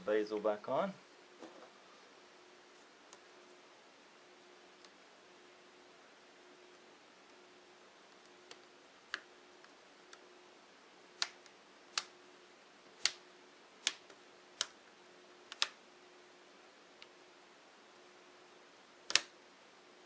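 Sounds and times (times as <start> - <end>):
plastic clips snapping into place: 19.1 - 19.3.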